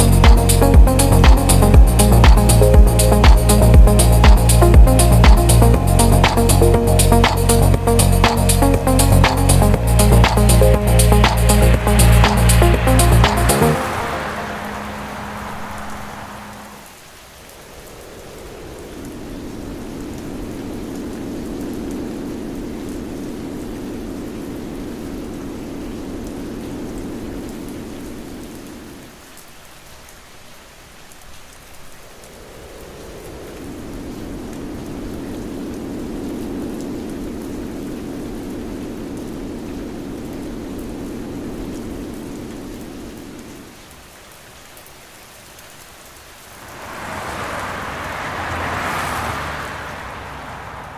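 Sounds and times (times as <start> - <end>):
rain drop ticks: 0.0 - 13.8
low rumble: 0.0 - 16.8
steady rain: 0.0 - 50.9.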